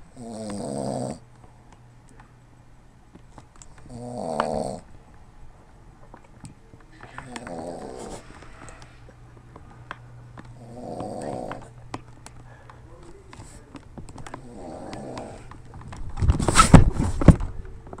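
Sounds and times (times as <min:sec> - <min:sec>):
man snoring: 0:00.1 - 0:01.2, 0:03.9 - 0:04.8, 0:07.2 - 0:08.2, 0:10.6 - 0:11.7, 0:14.4 - 0:15.5
knocks and rustling: 0:13.3 - 0:18.0.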